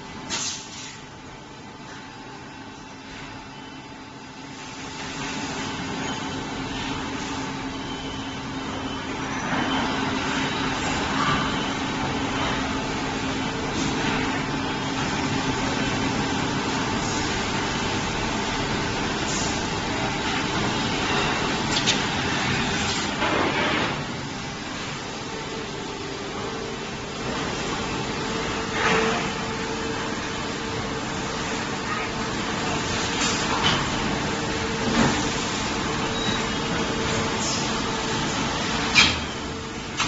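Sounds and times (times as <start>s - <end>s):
injection moulding machine humming: 1.1s - 40.0s.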